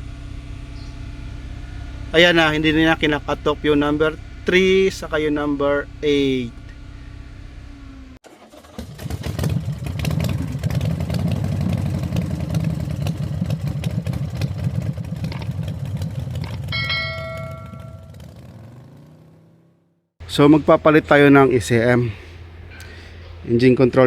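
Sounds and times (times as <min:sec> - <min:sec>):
engine running steadily: 0:00.0 - 0:24.0
short electronic chime: 0:16.8 - 0:18.2.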